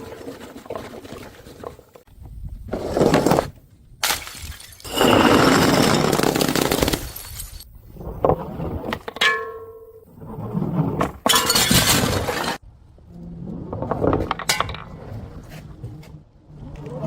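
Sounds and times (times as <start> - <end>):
glass bottles smashing: 4.0 - 7.6, 11.3 - 12.6.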